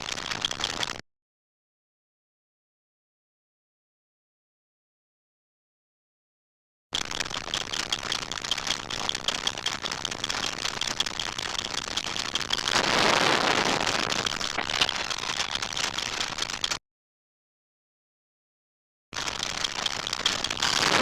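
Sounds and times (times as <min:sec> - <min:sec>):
electronic crackle: 0:00.0 - 0:01.0, 0:07.0 - 0:16.8, 0:19.2 - 0:21.0.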